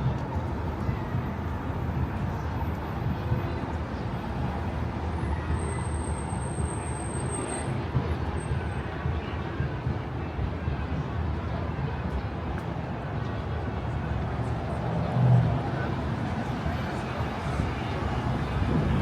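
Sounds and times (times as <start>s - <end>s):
wind buffeting microphone: 18.0s - 19.0s.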